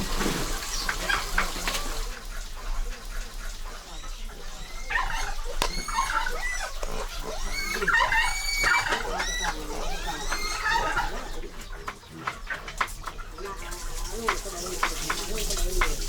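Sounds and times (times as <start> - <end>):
high wavering animal cries: 3.6 - 11.6.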